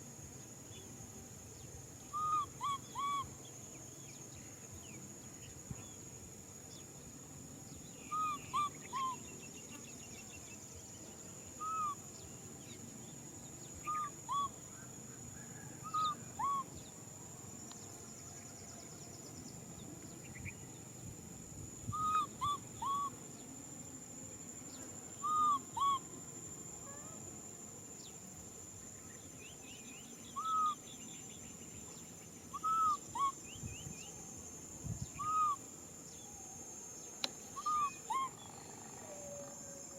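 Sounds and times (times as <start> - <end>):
baby macaque coo calls: 2.1 - 3.3, 8.1 - 9.2, 11.6 - 12.0, 13.8 - 14.6, 15.8 - 16.7, 21.9 - 23.2, 25.2 - 26.0, 30.4 - 30.8, 32.5 - 33.4, 35.2 - 35.6, 37.5 - 39.5.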